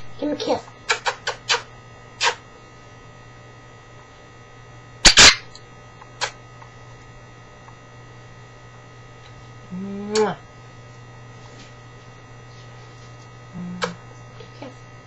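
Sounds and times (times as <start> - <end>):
low electrical hum: 0.0 - 15.0
parrot making smacking sounds: 0.4 - 2.4, 6.1 - 6.4, 13.7 - 14.5.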